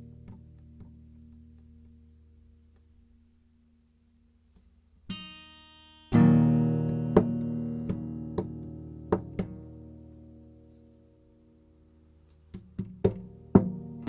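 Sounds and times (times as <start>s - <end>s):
guitar chords: 5.1s - 14.0s.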